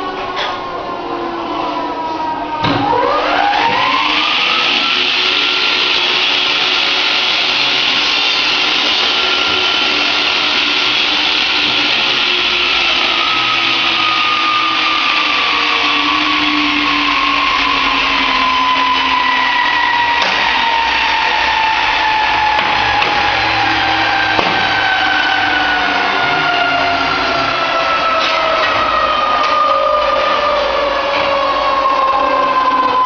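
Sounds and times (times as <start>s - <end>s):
power tool motor whining: 2.9s - 28.9s.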